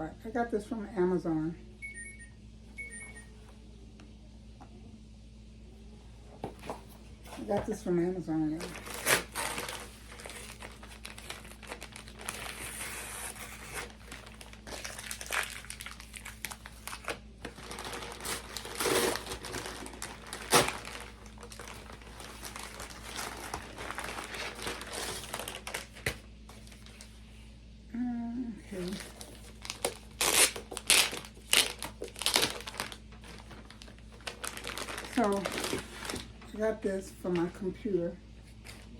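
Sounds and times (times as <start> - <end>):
packaging crinkling: 8.6 - 27.2, 28.8 - 36.5.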